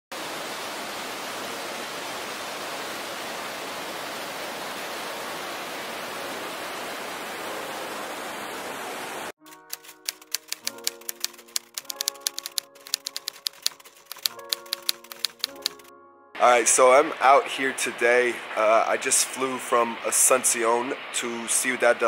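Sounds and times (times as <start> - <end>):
waterfall rushing: 0.1 - 9.3, 16.4 - 22.0
music with clicks and tones: 9.4 - 16.4.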